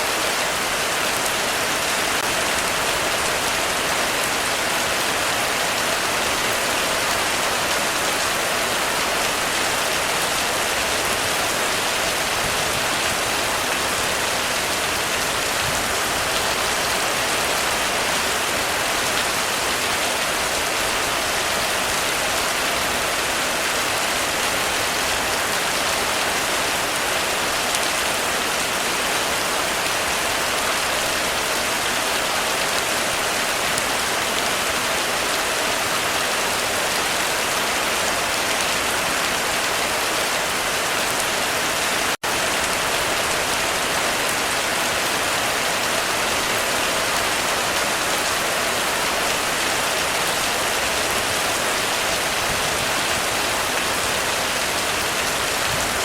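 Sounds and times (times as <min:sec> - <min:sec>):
heavy rain on a roof: 0:00.0 - 0:56.0.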